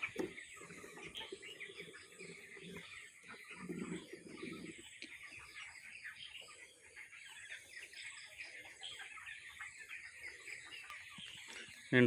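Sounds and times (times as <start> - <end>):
chicks peeping and chirping: 0.0 - 12.0.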